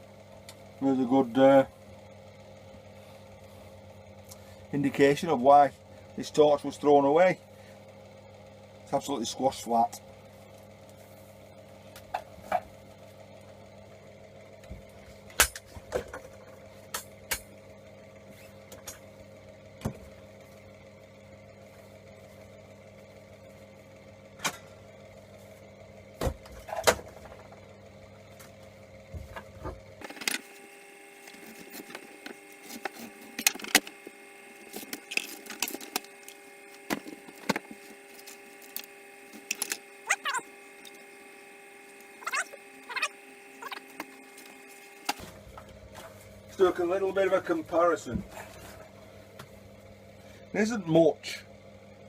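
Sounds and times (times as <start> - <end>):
steady electrical hum: 0.0 - 52.0
clicks and knocks of parts: 34.6 - 39.8.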